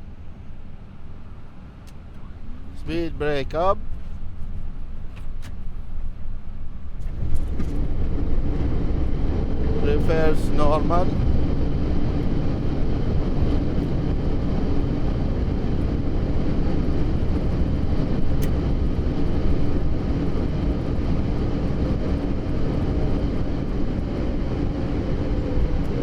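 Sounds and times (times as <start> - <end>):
jet engines in reverse thrust: 5.2 - 26.0
wheels rolling on runway: 7.0 - 26.0.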